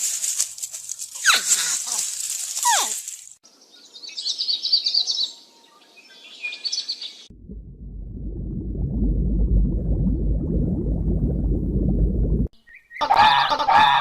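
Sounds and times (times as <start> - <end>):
bird chirping trills: 12.6 - 13.1.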